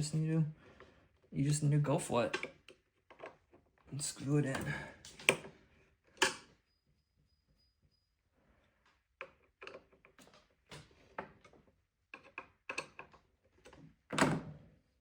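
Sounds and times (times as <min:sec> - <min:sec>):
small parts clicking and clattering: 0:02.3 - 0:03.9, 0:08.9 - 0:13.9.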